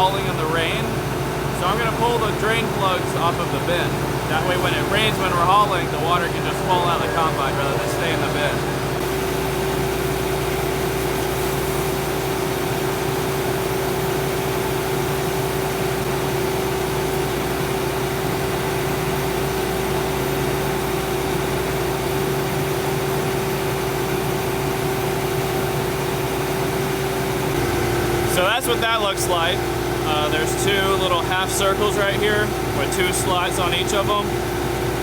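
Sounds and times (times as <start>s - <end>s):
engine idling: 0.0s - 18.9s.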